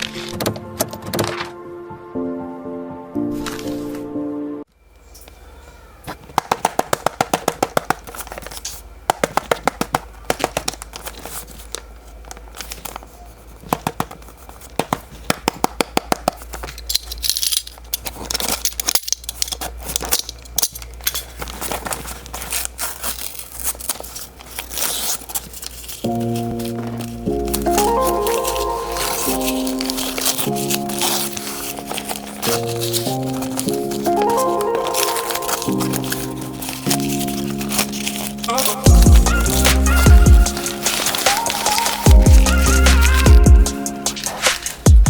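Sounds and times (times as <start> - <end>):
packaging crinkling and tearing: 6.1 - 45.0.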